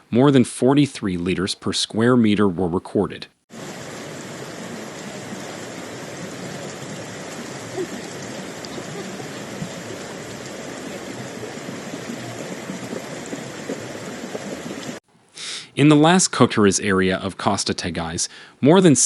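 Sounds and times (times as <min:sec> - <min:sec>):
rushing floodwater and rain: 0:03.5 - 0:15.0
small splashes: 0:03.5 - 0:15.0.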